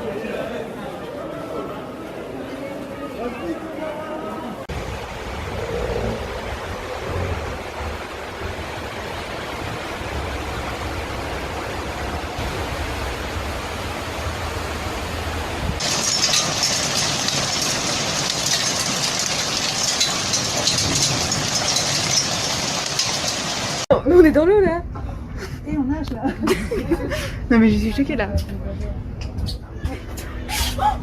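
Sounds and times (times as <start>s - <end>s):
torrential rain hissing: 4.6s - 23.9s.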